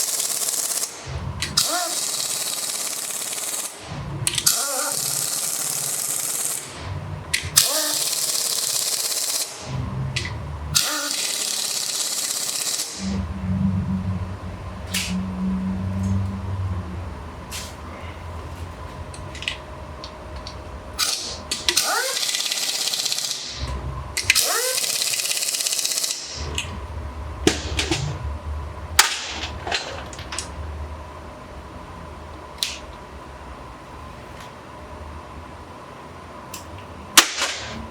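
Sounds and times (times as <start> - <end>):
low hum: 13.1 - 21.6, 26.4 - 32.4.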